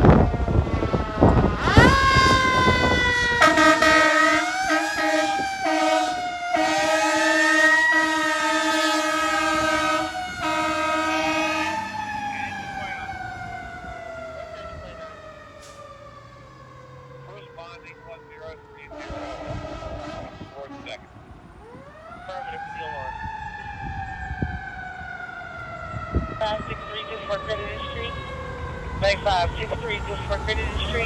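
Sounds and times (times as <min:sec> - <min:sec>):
fire engine siren: 0:00.0 - 0:31.0
air horn blasts: 0:01.6 - 0:13.0, 0:18.9 - 0:21.0.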